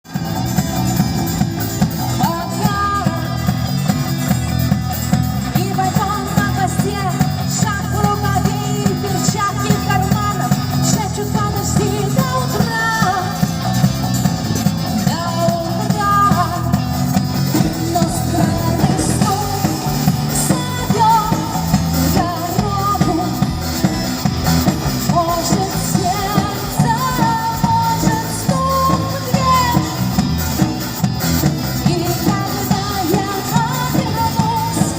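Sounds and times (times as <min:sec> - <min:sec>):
live band music: 0:00.0 - 0:34.9
person singing: 0:02.0 - 0:03.7, 0:14.9 - 0:24.3, 0:24.9 - 0:30.5, 0:31.8 - 0:34.9.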